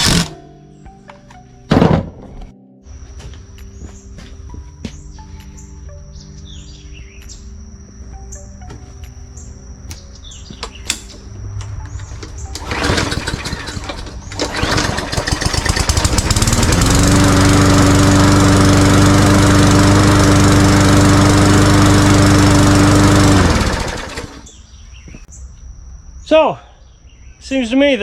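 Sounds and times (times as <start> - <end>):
lawn mower engine starting and running: 0.0 - 0.4, 11.9 - 24.5.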